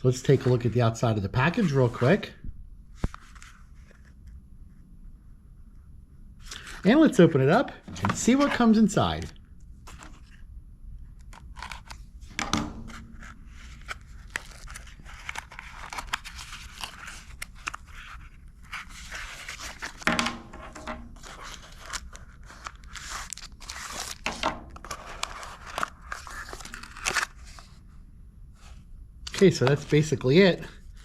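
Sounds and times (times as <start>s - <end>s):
package crinkling and tearing: 13.0s - 20.0s, 21.2s - 27.7s.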